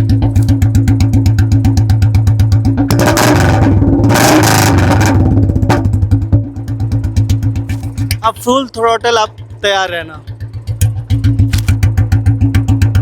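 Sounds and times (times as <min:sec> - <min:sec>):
motorcycle engine idling and revving: 0:00.0 - 0:13.0.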